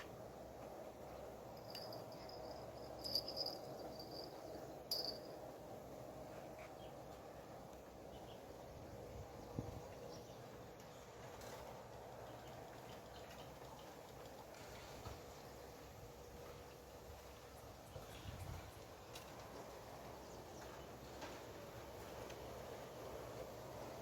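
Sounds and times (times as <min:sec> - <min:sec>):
low steady background: 0:00.0 - 0:24.0
insect pulsed trill: 0:01.6 - 0:05.4.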